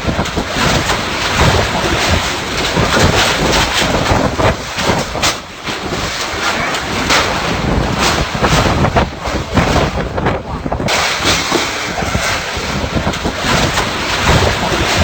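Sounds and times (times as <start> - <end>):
strong gusting wind: 0.0 - 15.0.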